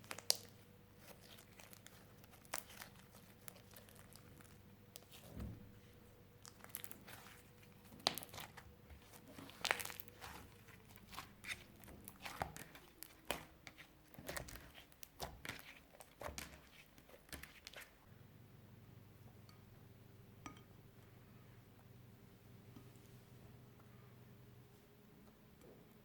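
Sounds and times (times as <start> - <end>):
slime crackling and popping: 0.0 - 5.3, 6.4 - 17.9.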